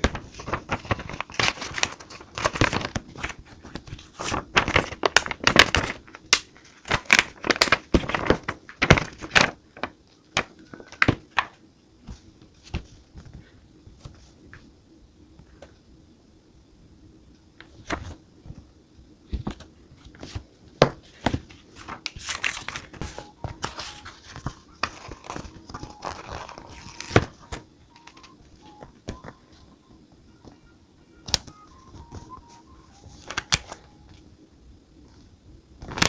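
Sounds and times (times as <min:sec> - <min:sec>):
paper crinkling and rustling: 0:00.0 - 0:14.3, 0:19.3 - 0:29.7, 0:31.3 - 0:34.2, 0:35.8 - 0:36.0
faint background music: 0:21.4 - 0:36.0.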